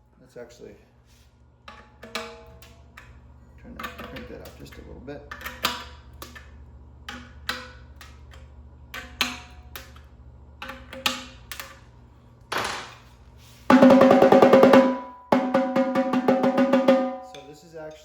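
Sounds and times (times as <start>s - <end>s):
darbuka hits and rolls: 13.7s - 17.5s.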